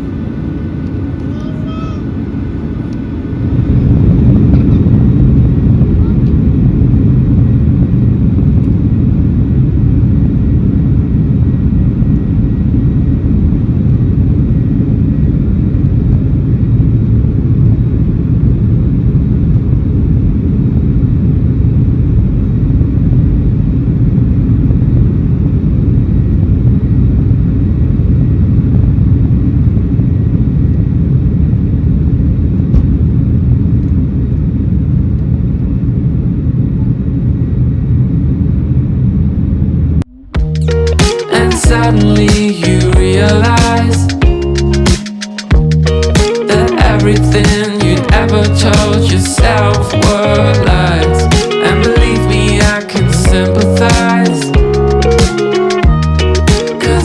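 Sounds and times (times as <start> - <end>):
jet engines rumbling inside cabin: 0.0 - 41.0.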